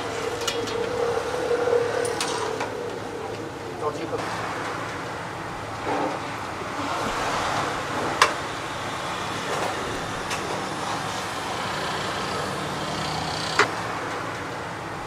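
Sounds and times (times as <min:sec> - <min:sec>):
low hum: 0:00.0 - 0:08.2.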